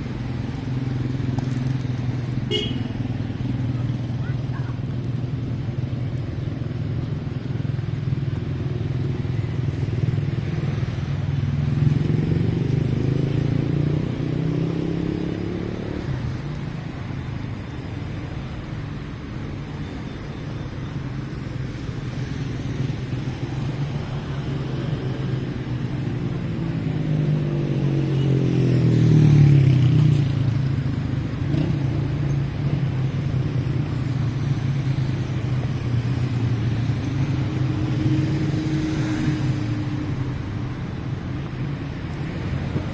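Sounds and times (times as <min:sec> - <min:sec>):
street traffic hum: 0:00.0 - 0:42.9.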